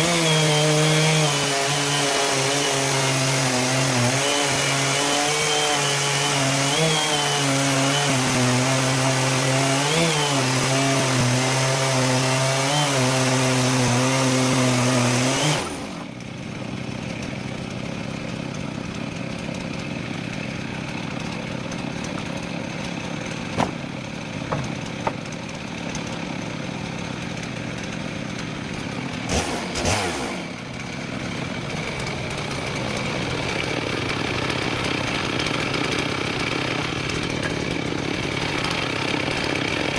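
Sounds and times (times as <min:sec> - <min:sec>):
chainsaw cutting log: 0:00.0 - 0:39.9
sharp knocks: 0:23.5 - 0:23.9, 0:24.5 - 0:25.2.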